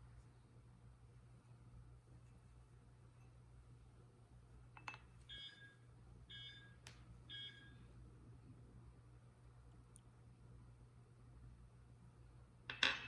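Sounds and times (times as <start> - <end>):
short electronic beeps: 6.3 - 7.8.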